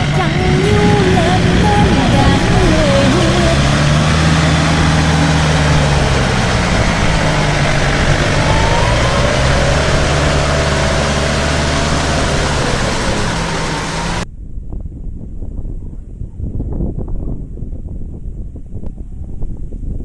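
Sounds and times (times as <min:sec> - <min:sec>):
combine harvester diesel engine: 0:00.0 - 0:14.2.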